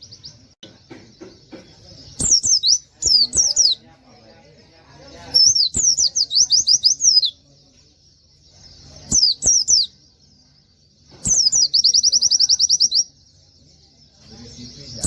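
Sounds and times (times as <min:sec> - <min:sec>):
bird singing high fast notes: 0:02.2 - 0:03.8.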